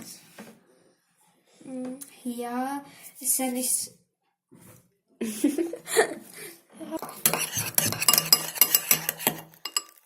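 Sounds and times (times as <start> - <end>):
utensil scraping against bowl: 7.0 - 10.0.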